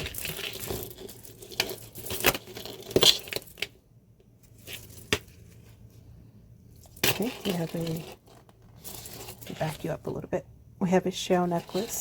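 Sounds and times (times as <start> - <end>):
rustling: 0.0 - 3.7, 4.3 - 10.1
jewelry clicking and rattling: 0.0 - 3.8, 4.4 - 5.4, 6.7 - 9.7.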